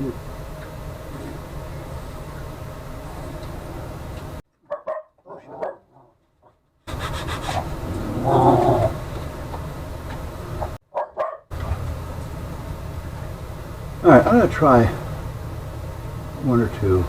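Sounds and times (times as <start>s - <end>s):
steady low hum: 0.0s - 4.4s, 6.9s - 10.8s, 11.5s - 17.0s
dog barking: 4.6s - 6.1s, 10.9s - 11.6s.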